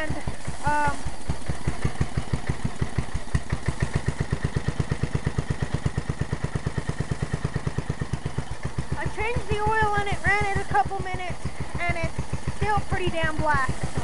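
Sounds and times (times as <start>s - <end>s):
lawn mower engine idling: 0.0s - 14.0s.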